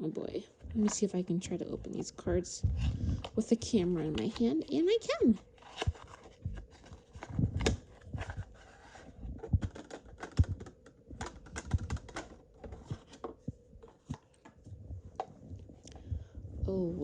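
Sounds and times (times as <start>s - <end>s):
card pack clicks and crinkles: 5.4s - 13.2s.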